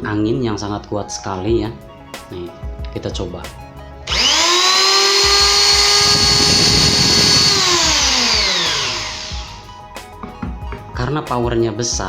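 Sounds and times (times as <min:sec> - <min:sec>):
electric hand planer whining: 0:04.1 - 0:09.6.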